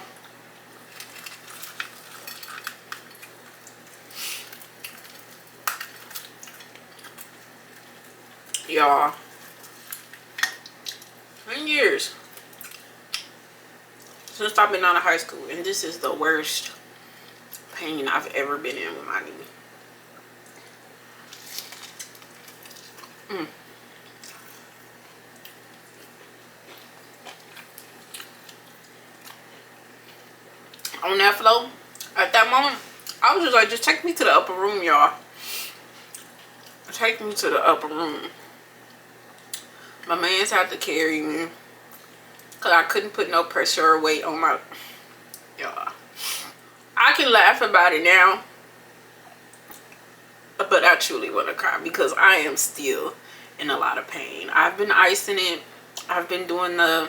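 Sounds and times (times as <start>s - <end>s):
crunchy chewing: 0.2s - 8.6s, 12.2s - 13.4s, 20.2s - 31.0s.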